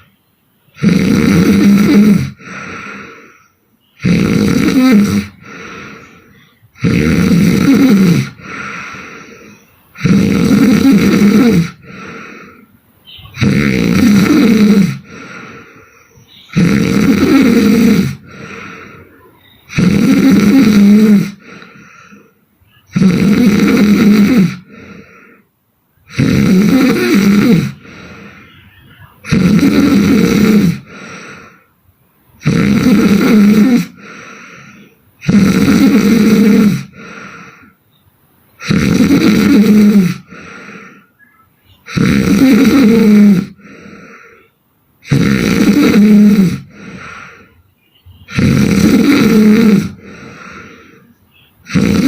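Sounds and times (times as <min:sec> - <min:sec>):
woman snoring loudly: 0:00.8 - 0:03.4, 0:04.0 - 0:12.7, 0:13.4 - 0:22.3, 0:22.9 - 0:25.4, 0:26.1 - 0:28.5, 0:29.2 - 0:31.6, 0:32.4 - 0:37.7, 0:38.6 - 0:41.1, 0:41.8 - 0:47.5, 0:48.3 - 0:51.0, 0:51.6 - 0:52.0
faint breath: 0:02.3 - 0:03.9, 0:05.2 - 0:06.8, 0:08.3 - 0:10.0, 0:11.7 - 0:13.2, 0:15.0 - 0:16.6, 0:18.1 - 0:19.8, 0:21.3 - 0:22.4, 0:24.6 - 0:25.5, 0:27.7 - 0:29.0, 0:30.7 - 0:31.8, 0:33.9 - 0:35.0, 0:36.8 - 0:38.0, 0:40.1 - 0:41.9, 0:43.5 - 0:44.6, 0:46.5 - 0:48.4, 0:49.8 - 0:51.5.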